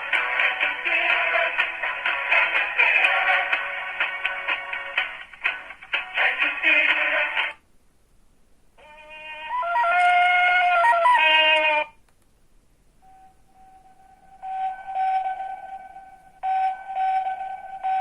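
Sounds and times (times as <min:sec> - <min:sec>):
phone ringtone melody: 0:16.4 - 0:18.0.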